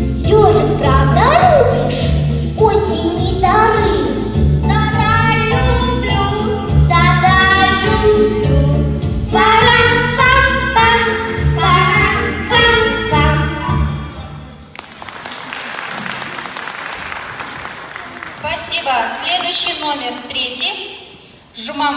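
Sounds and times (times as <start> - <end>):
backing track with pulsing bass: 0.0 - 14.1
child singing: 0.2 - 14.0.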